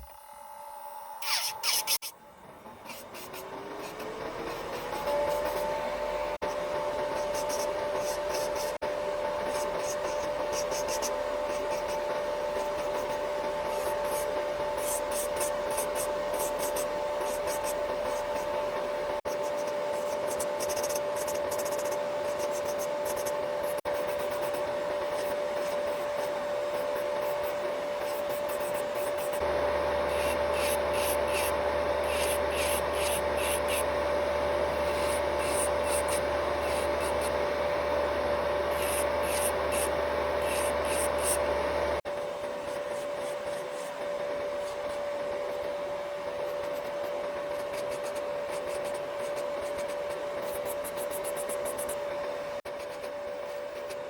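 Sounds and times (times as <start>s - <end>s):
small motor humming: 0.0s - 54.0s
fingernails being filed: 1.2s - 2.1s.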